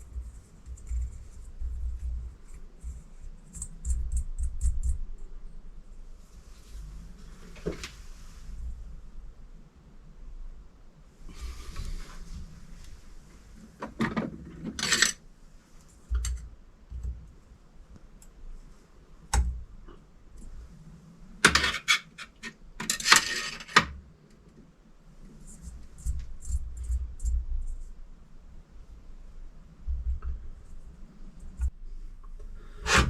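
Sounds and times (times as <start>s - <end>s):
metal tools clinking and rattling: 14.7s - 15.2s.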